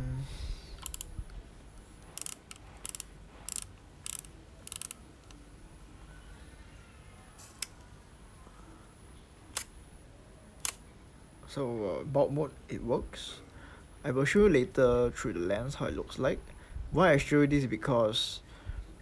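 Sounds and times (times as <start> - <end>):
camera shutter clicks: 0.8 - 1.1, 2.2 - 5.4, 9.6 - 9.8.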